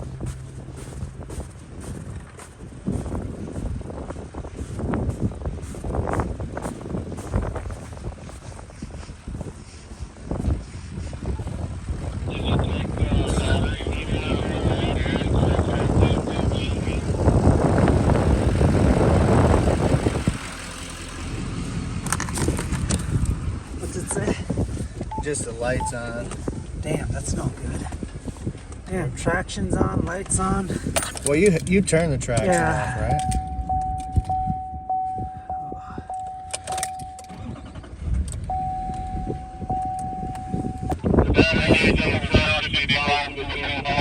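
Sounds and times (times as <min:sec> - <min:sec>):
vehicle engine rumbling: 0:00.0 - 0:44.0
vehicle warning chime: 0:25.1 - 0:26.3, 0:32.6 - 0:41.2.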